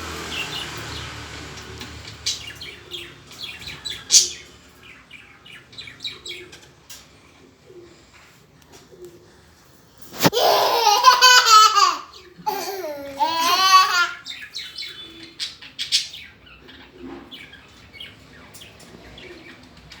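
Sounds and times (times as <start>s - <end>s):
small birds chirping: 0.0s - 20.0s
toddler squealing: 11.8s - 14.2s.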